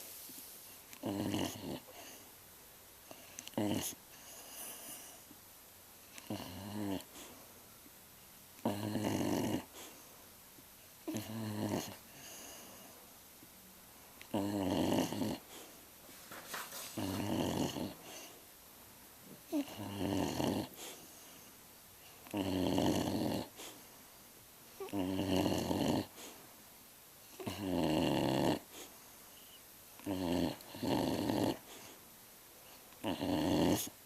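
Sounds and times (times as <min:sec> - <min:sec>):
pet snoring and grunting: 0:00.9 - 0:02.2, 0:03.1 - 0:05.2, 0:06.1 - 0:07.3, 0:08.6 - 0:10.0, 0:11.0 - 0:12.9, 0:14.2 - 0:15.7, 0:16.9 - 0:18.4, 0:19.5 - 0:21.0, 0:22.2 - 0:23.8, 0:24.8 - 0:26.3, 0:27.3 - 0:28.9, 0:30.0 - 0:31.9, 0:33.0 - 0:34.0.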